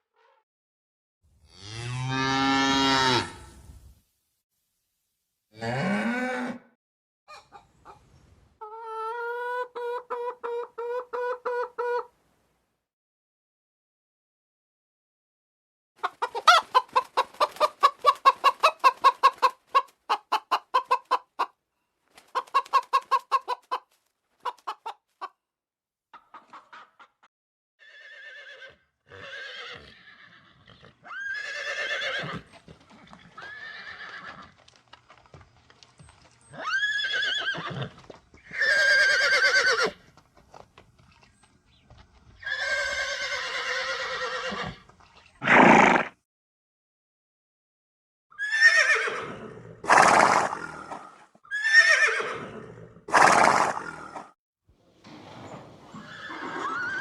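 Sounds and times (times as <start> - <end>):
horse neighing: 5.6 - 6.7, 27.8 - 32.5, 33.1 - 34.5, 36.6 - 40.0, 42.4 - 44.8, 45.4 - 46.2, 48.4 - 54.3, 55.0 - 57.0
chicken clucking: 7.3 - 12.1, 16.0 - 21.6, 22.2 - 25.4, 26.1 - 27.3.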